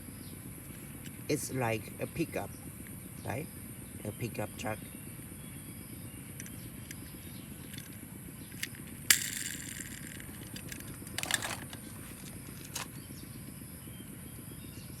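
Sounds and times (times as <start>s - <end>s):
low background hum: 0.0s - 15.0s
toy cars clicking and knocking: 7.7s - 12.9s
brief rustle: 8.6s - 12.9s.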